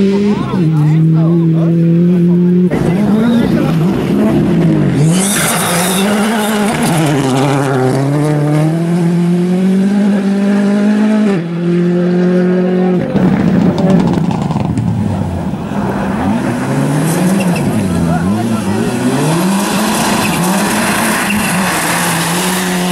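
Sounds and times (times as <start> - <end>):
rally car engine revving: 0.0 - 22.9
tyre squeal: 5.0 - 7.2, 19.6 - 22.9.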